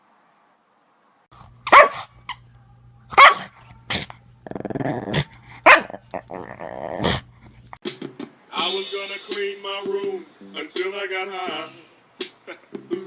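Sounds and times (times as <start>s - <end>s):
dog barking sharply: 1.7s - 2.1s, 3.2s - 3.5s, 5.6s - 6.0s
dog growling: 3.3s - 7.6s.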